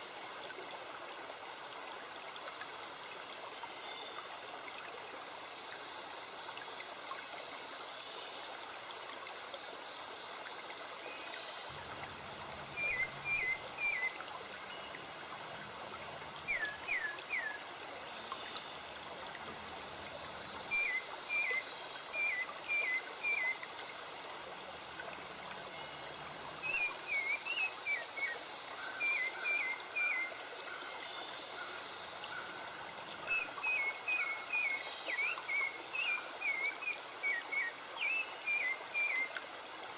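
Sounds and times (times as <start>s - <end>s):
running water rushing: 0.0s - 39.9s
bird chirping: 12.6s - 15.1s.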